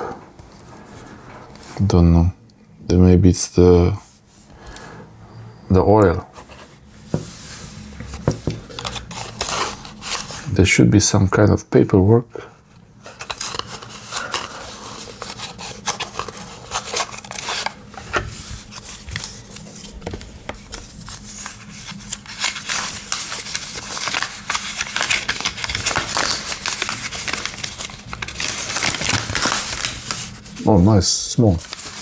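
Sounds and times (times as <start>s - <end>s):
cardboard box rustling: 13.1s - 30.6s.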